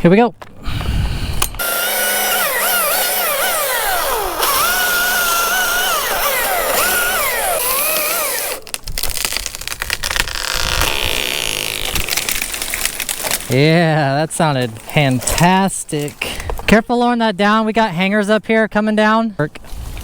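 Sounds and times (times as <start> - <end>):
chainsaw cutting wood: 1.6 - 13.5
wood cracking and rustling: 1.6 - 13.8, 14.6 - 16.8.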